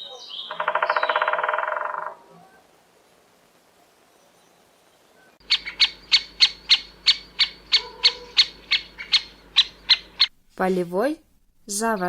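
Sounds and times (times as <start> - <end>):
bird sharp notes: 5.4 - 10.3.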